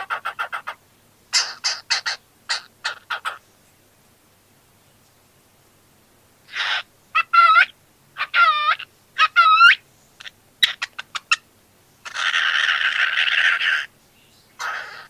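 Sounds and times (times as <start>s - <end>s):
cockatiel harsh raspy call: 0.0s - 3.4s, 6.5s - 11.4s, 12.0s - 13.9s, 14.6s - 15.0s.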